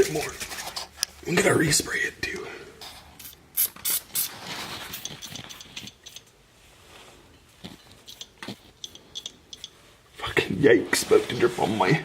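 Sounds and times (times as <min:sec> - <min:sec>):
aerosol can spraying: 0:03.2 - 0:06.2
sharp metallic clicks: 0:08.1 - 0:09.8.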